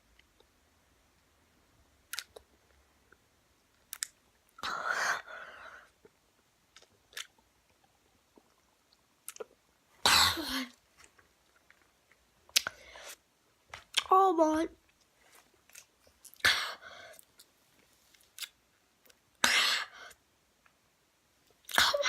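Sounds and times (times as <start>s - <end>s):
mouth clicks and smacks: 2.0s - 4.6s, 6.0s - 9.7s, 11.5s - 13.2s, 13.8s - 14.1s, 17.2s - 19.2s.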